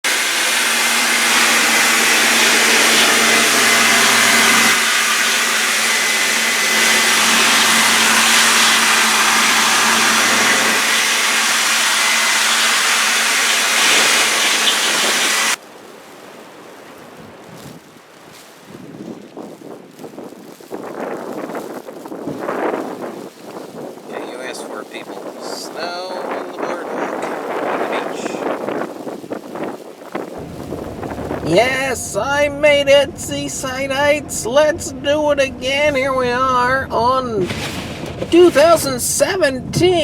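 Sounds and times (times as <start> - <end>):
machine motor running: 0.0 - 15.6, 30.4 - 38.8.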